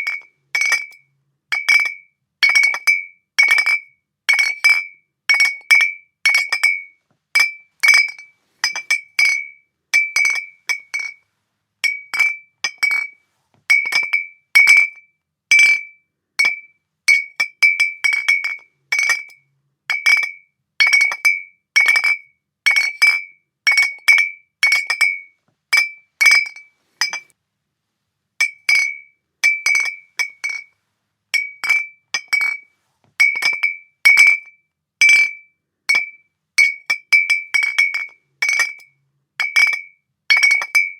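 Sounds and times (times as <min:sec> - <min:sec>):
glass bottles clinking: 0:05.4 - 0:11.2, 0:11.8 - 0:14.9, 0:22.8 - 0:25.2, 0:25.8 - 0:27.3, 0:28.4 - 0:30.7, 0:31.4 - 0:32.6, 0:33.2 - 0:34.4, 0:35.0 - 0:40.9.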